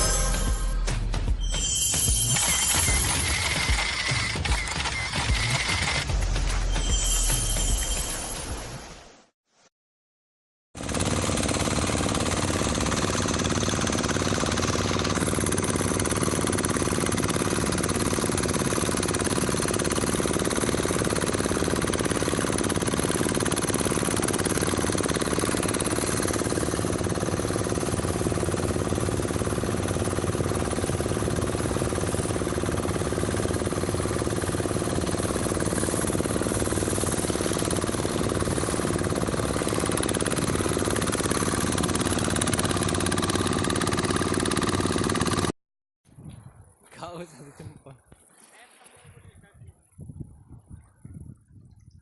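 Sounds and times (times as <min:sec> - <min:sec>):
boat engine chugging: 0:10.8 - 0:45.5.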